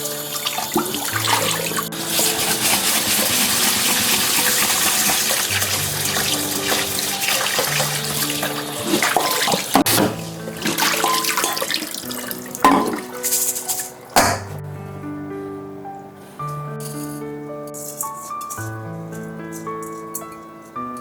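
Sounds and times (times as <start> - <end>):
tap water running into sink: 0.0 - 14.4
music with long held notes: 0.0 - 21.0.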